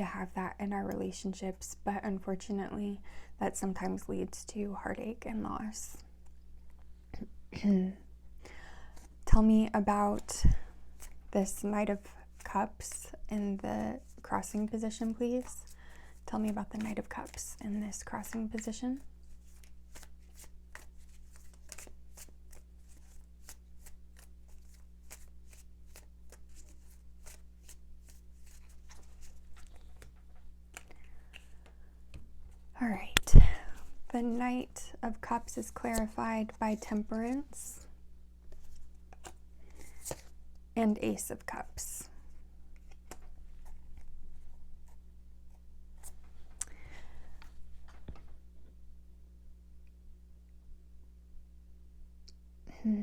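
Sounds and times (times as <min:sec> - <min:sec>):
low steady hum: 0:00.0 - 0:53.0
cards being shuffled: 0:13.9 - 0:34.4, 0:35.4 - 0:37.8, 0:38.5 - 0:40.4.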